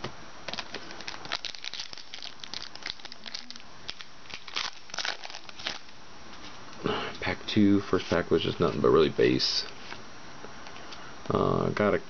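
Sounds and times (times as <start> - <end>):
foil wrapper crinkling and tearing: 0.5 - 6.0.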